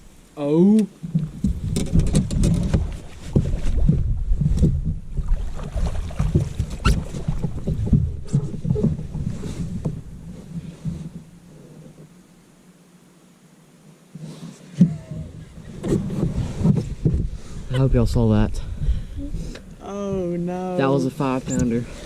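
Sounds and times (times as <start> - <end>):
knocks and thumps on boat: 1.0 - 11.3, 14.8 - 17.4
wind rumble on microphone: 1.0 - 11.3, 14.9 - 20.4.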